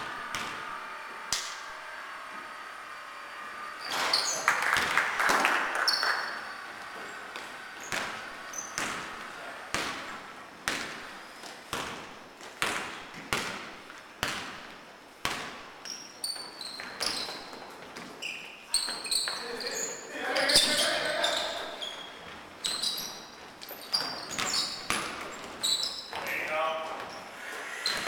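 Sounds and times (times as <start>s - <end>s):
short high squeaks: 0.0s - 4.7s, 5.8s - 9.4s, 15.9s - 28.0s
basketball dribbling on hard court: 0.3s - 0.6s, 7.4s - 18.1s, 22.6s - 26.2s.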